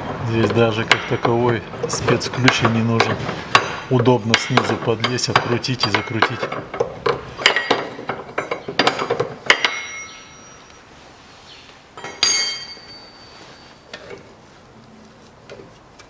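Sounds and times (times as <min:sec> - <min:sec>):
steel tools clinking: 0:00.4 - 0:06.8, 0:07.4 - 0:10.9, 0:12.0 - 0:14.4
loud metallic clank: 0:00.8 - 0:06.6, 0:12.0 - 0:13.3.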